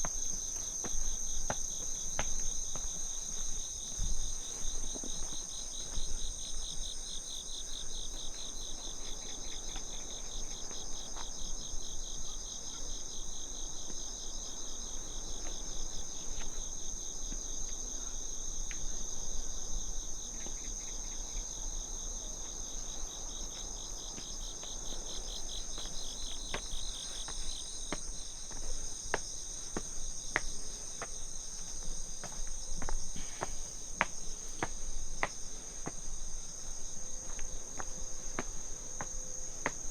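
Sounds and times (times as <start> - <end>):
crickets chirping: 0.0 - 39.9
rapidly pulsing insect trill: 0.0 - 39.9.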